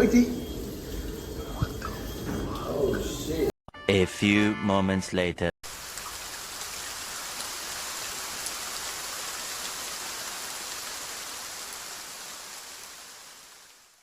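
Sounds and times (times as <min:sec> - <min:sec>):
hiss of falling water: 0:05.7 - 0:14.0.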